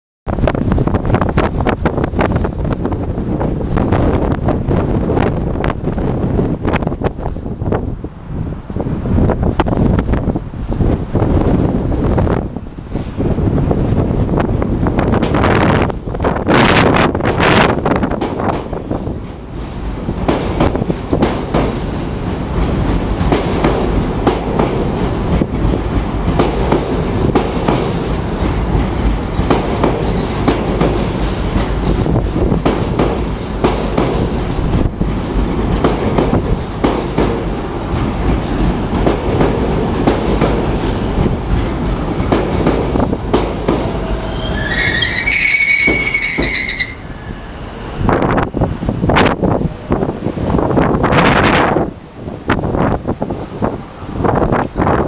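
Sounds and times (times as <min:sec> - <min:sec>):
wind buffeting microphone: 0:00.3 - 0:55.0
electric train running past: 0:00.4 - 0:55.0
wheels clacking over rail joints: 0:12.7 - 0:47.3
high wheel squeal: 0:28.7 - 0:30.5, 0:44.0 - 0:47.9.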